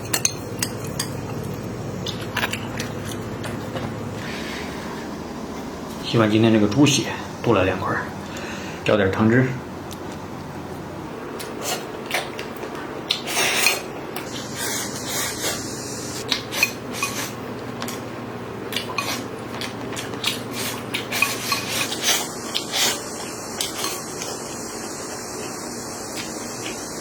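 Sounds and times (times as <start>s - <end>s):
spoon clinking and scraping in pot: 0.0s - 1.5s.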